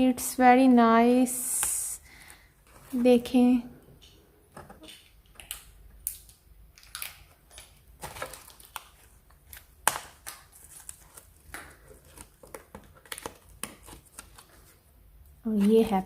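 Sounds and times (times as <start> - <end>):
packaging crinkling: 4.8 - 14.8.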